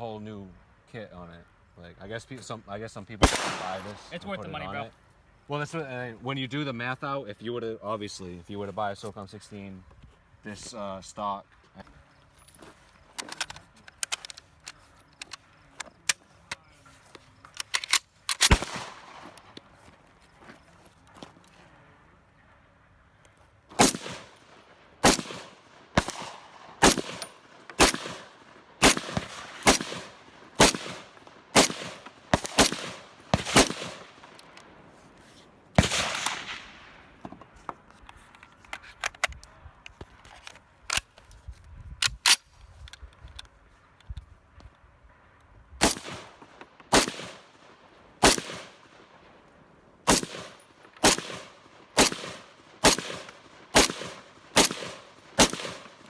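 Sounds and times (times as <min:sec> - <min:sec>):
distant gunshot cracks: 0:03.2 - 0:04.1, 0:25.0 - 0:34.2, 0:35.8 - 0:37.1
loud ringing gunshot: 0:03.2 - 0:04.1, 0:35.8 - 0:36.8
gunshots: 0:03.2 - 0:04.4, 0:18.4 - 0:19.4, 0:23.8 - 0:34.3, 0:35.8 - 0:37.1, 0:45.8 - 0:47.6, 0:48.2 - 0:48.8, 0:50.1 - 0:56.0.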